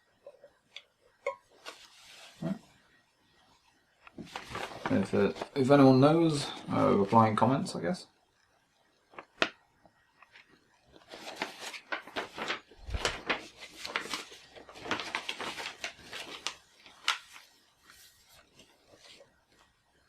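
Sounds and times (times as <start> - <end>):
packaging crinkling and rustling: 4.1 - 5.7, 10.3 - 19.3.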